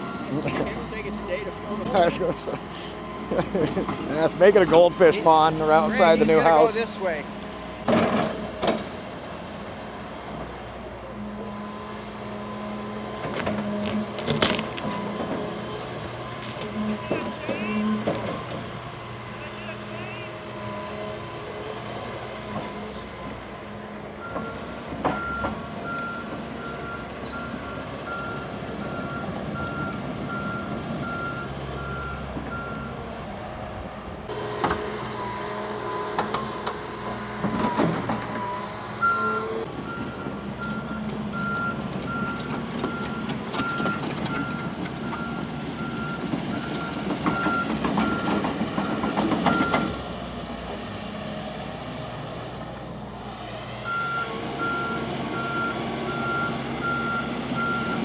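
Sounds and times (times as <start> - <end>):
excavator reversing beeps: 0.0 - 7.0, 11.2 - 14.0, 14.9 - 21.8, 24.2 - 33.0, 34.3 - 50.0, 53.8 - 58.0
diesel engine running: 0.0 - 58.0.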